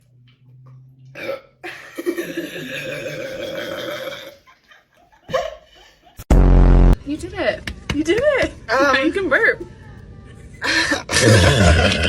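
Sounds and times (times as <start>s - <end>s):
person burping: 1.2s - 4.4s, 11.0s - 12.0s.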